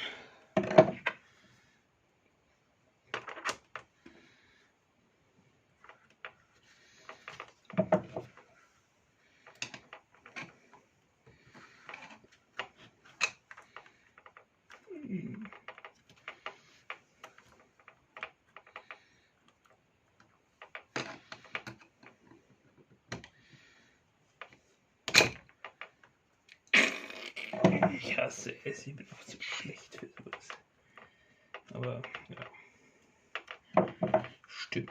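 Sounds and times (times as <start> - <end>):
plastic and metal parts rattling: 0.6 - 1.2, 3.1 - 4.2, 5.8 - 8.7, 9.3 - 23.4, 27.5 - 34.9.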